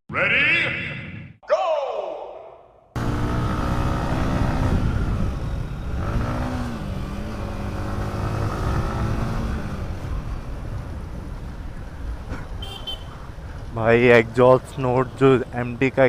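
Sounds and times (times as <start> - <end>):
motorcycle engine running: 3.0 - 10.7.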